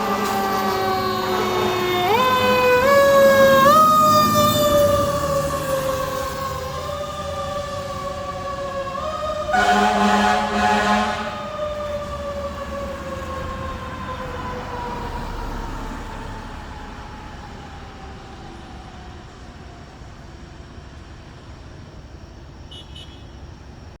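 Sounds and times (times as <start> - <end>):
fire truck siren wailing: 0.0 - 21.2
air horn blast: 1.2 - 2.6, 9.5 - 11.6.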